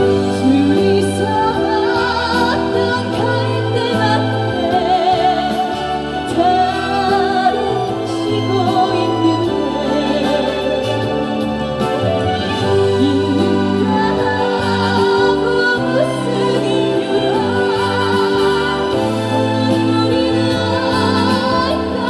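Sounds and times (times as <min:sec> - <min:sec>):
slow ballad with band: 0:00.0 - 0:22.0.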